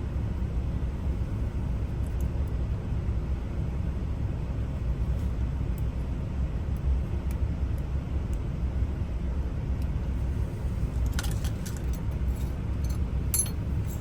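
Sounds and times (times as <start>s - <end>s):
steady low rumble: 0.0s - 14.0s
metallic clicks and clinks: 11.1s - 14.0s.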